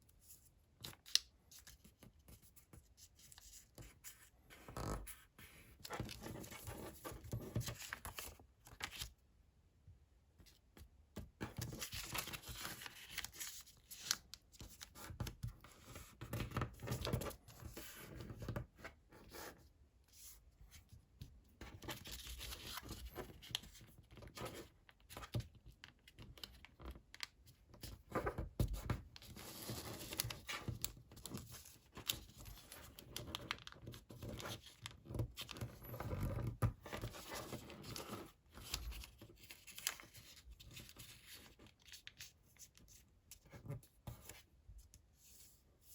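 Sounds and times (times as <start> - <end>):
paper rustling and crinkling: 5.8 - 9.1, 11.4 - 15.6, 26.2 - 43.5.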